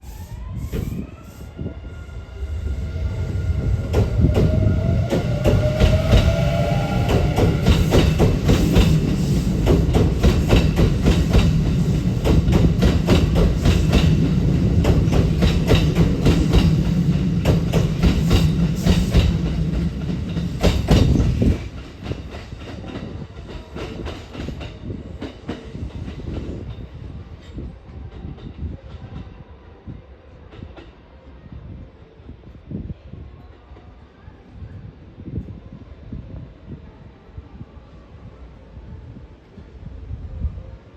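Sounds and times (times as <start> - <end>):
train rumble: 0.0 - 40.9
train wheels clacking: 3.8 - 26.8.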